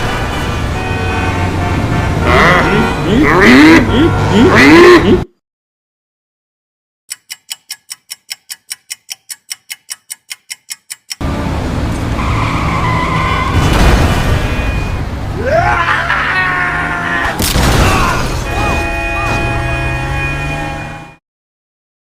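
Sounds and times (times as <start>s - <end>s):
rapid even ticking: 7.1s - 11.2s
car tyres skidding and squealing: 11.9s - 14.9s.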